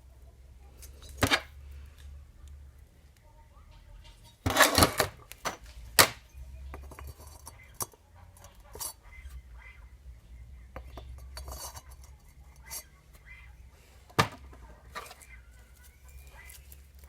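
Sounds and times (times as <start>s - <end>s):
metal tools clinking and clattering: 4.4s - 5.8s.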